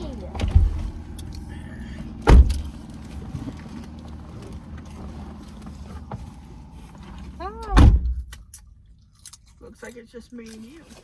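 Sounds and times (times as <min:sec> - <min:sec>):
car engine rumble inside cabin: 0:00.0 - 0:11.0
heavy thump: 0:02.2 - 0:02.7.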